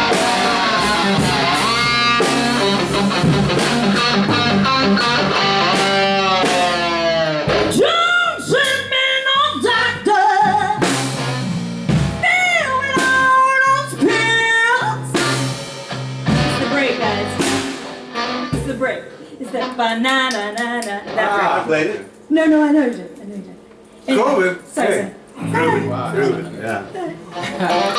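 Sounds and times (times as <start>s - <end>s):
lead guitar bending notes: 0.0s - 7.8s, 25.2s - 27.9s
live band playing: 0.0s - 19.7s, 25.2s - 27.9s.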